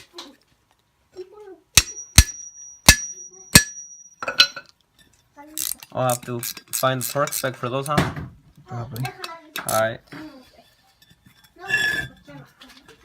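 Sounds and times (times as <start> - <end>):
metal strikes on brake rotor: 1.8 - 4.6.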